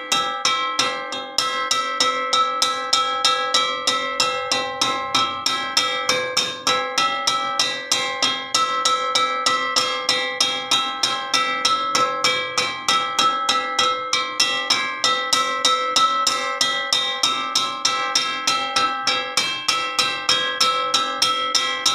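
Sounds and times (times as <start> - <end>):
metal wok struck ringing: 0.0 - 21.9.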